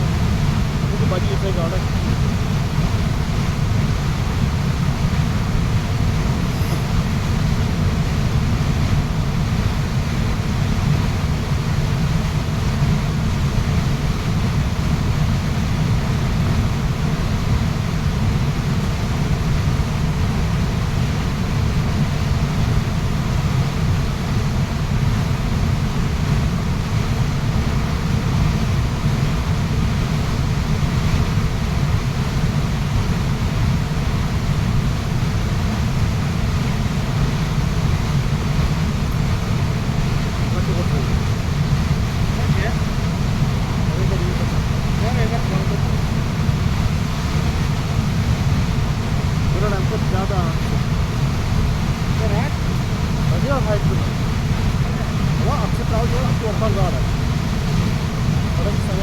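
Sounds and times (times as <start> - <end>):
waterfall rushing: 37.0 - 59.0.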